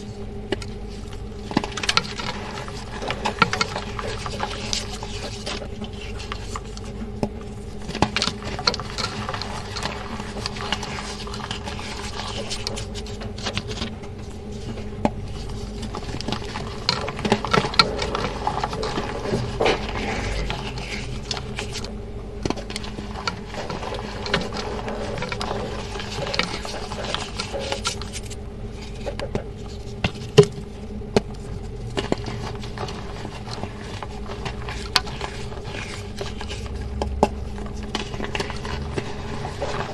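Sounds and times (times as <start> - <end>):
chalk crunching and crackling: 0.0 - 39.9
faint steady hum: 0.0 - 39.9.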